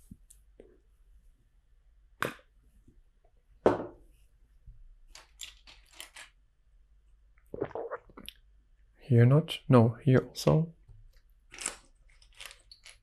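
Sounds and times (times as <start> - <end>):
loose plastic bricks clattering: 5.2 - 6.3, 11.5 - 13.0.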